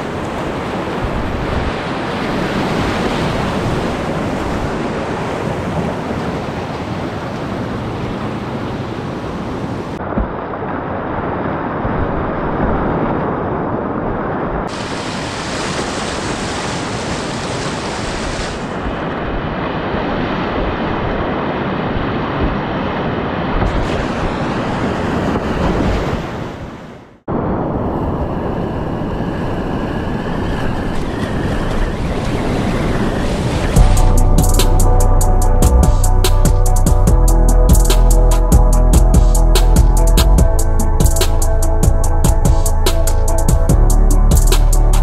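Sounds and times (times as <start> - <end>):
whitewater rushing: 0.0 - 26.0
wind buffeting microphone: 0.0 - 45.0.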